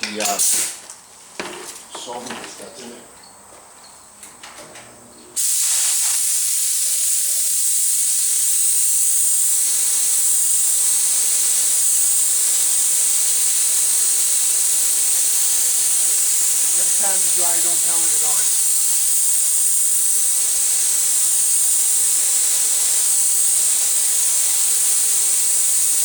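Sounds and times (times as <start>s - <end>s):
spray gun hissing air: 5.4s - 26.0s.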